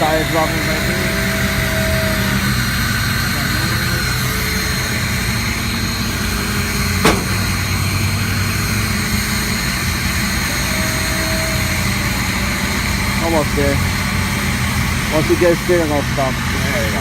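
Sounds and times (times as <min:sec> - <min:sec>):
truck engine running: 0:00.0 - 0:17.0
winch pulling: 0:00.0 - 0:17.0
sharp knock: 0:07.0 - 0:07.5.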